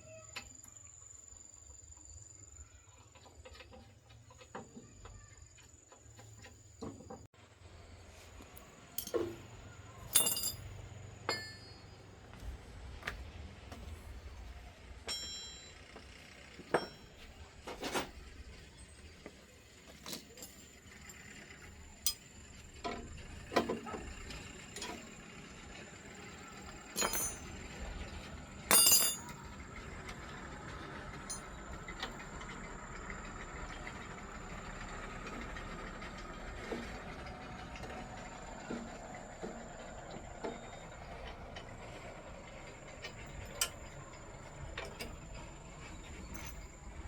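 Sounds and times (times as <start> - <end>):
metallic clinks and knocks: 9.0 - 12.0, 15.1 - 16.0, 16.6 - 18.1, 20.0 - 21.4, 26.8 - 27.6, 28.7 - 29.4, 31.2 - 31.6, 46.2 - 46.7.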